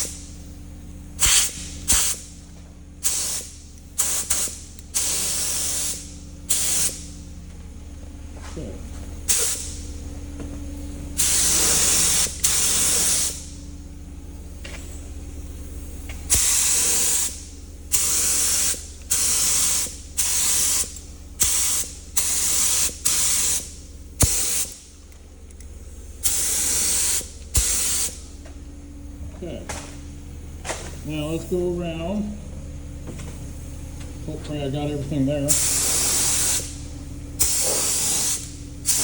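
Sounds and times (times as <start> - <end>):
steady low hum: 0.0 - 39.0
paint spray gun hissing: 1.2 - 2.2, 3.0 - 7.1, 9.3 - 9.8, 11.2 - 13.5, 16.3 - 24.9, 26.2 - 28.3, 35.5 - 36.8, 37.4 - 39.0.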